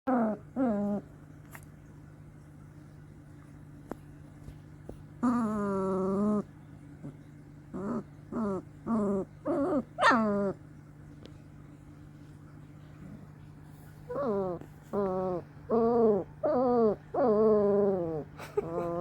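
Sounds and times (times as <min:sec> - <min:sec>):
puppy whining: 0:00.1 - 0:01.1, 0:05.2 - 0:10.6, 0:14.0 - 0:19.0.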